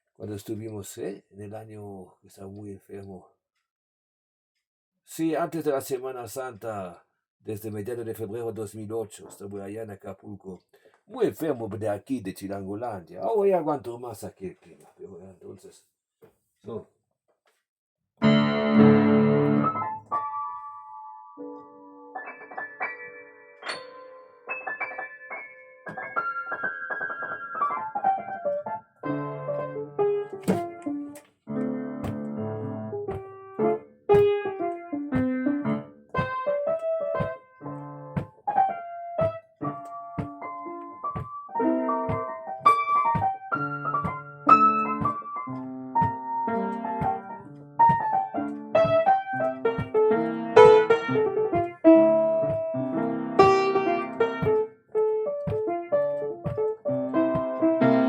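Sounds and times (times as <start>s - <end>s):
piano melody over chords: 18.2s - 58.0s.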